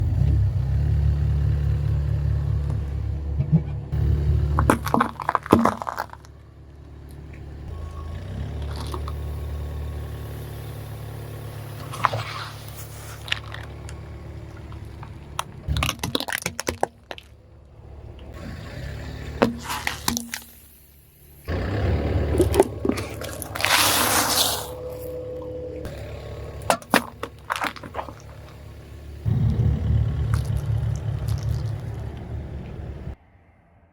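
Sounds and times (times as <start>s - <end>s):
car engine running: 0.0s - 33.2s
tyre crushing objects: 4.6s - 6.3s.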